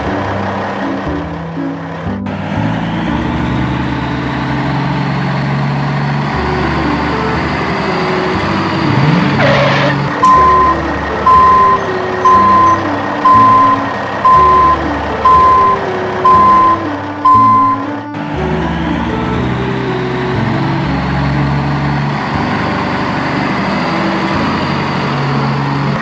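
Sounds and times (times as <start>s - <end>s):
background music stepping melody: 0.0s - 26.0s
truck reversing beeper: 0.0s - 26.0s
pitch sweep: 6.4s - 20.4s.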